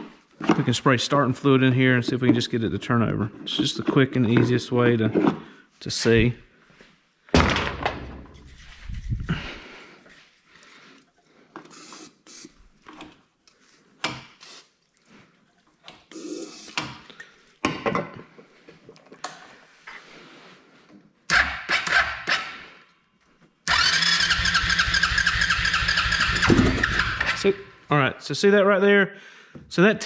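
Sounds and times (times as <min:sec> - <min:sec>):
engine cranking and running: 0:23.7 - 0:27.4.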